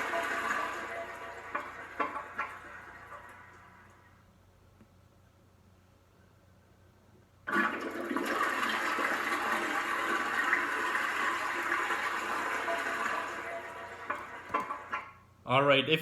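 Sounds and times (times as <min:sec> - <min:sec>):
toilet flushing: 0:00.0 - 0:04.1, 0:07.4 - 0:15.2.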